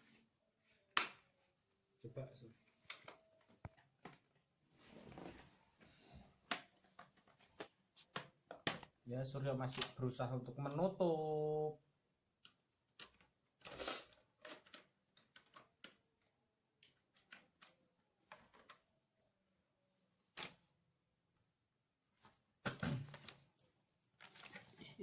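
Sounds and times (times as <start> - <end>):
plastic laptop casing clicks: 6.4 - 9.0, 9.6 - 10.0.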